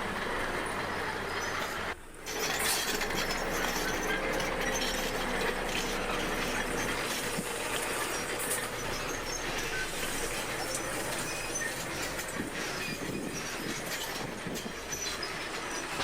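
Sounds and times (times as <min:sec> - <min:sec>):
bulldozer diesel engine: 0:00.0 - 0:16.0
metallic clanking of crawler tracks: 0:00.0 - 0:16.0.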